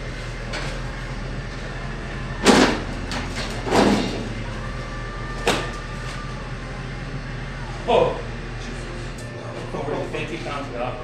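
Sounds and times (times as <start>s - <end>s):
steady low hum: 0.0s - 11.0s
loud knocks: 2.4s - 4.8s, 5.4s - 6.1s.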